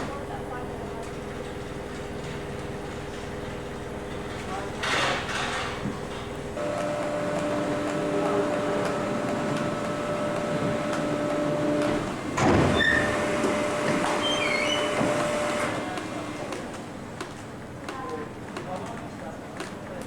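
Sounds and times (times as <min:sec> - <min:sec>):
baler machine whine: 0:06.4 - 0:16.7
short high squeaks: 0:12.6 - 0:15.8.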